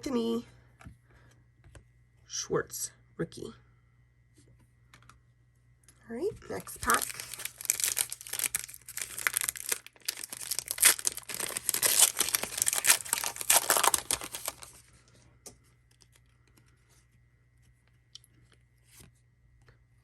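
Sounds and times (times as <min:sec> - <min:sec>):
wrapper being torn and crinkled: 0:06.5 - 0:14.8.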